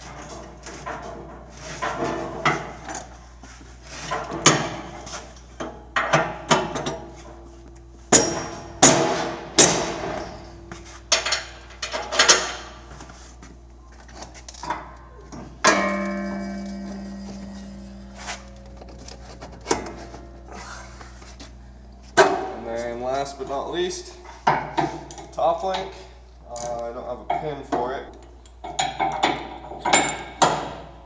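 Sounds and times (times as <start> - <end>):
metal hitch parts clanking: 3.9 - 13.1, 14.2 - 23.3, 28.4 - 30.9.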